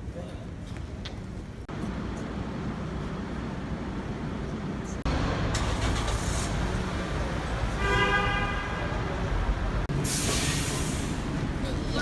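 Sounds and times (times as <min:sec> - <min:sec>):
road traffic: 0:00.0 - 0:12.0
vehicle horn: 0:07.8 - 0:09.0.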